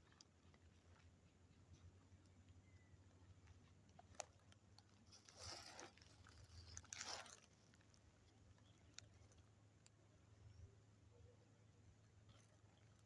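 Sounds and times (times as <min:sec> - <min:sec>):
soft crunching rustles: 0:00.0 - 0:10.3.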